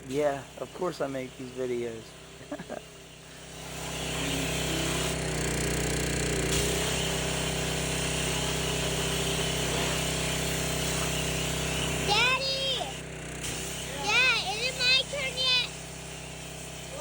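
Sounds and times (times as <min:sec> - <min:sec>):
small petrol engine running: 0:00.0 - 0:17.0.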